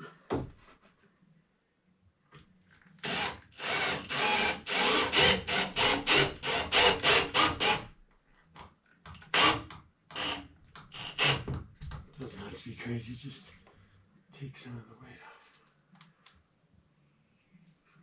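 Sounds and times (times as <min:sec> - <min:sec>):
tool rasping wood: 0:03.1 - 0:07.9.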